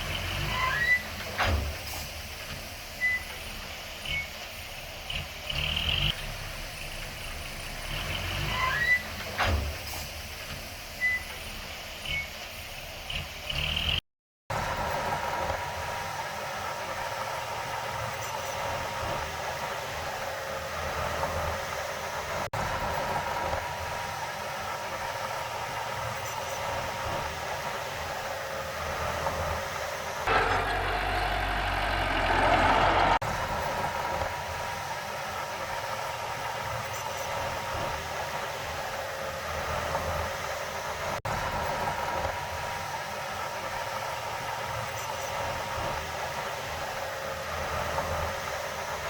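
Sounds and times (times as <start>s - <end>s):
diesel engine low rumble: 0.0s - 49.0s.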